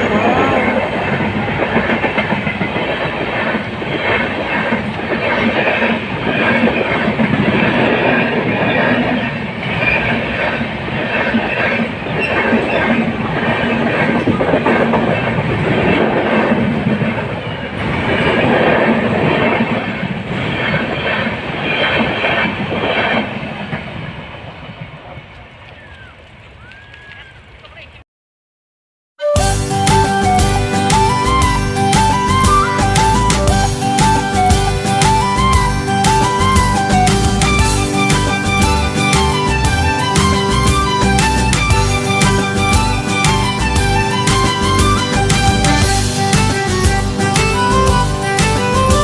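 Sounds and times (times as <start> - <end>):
train wheels clattering over rails: 0.0 - 24.0.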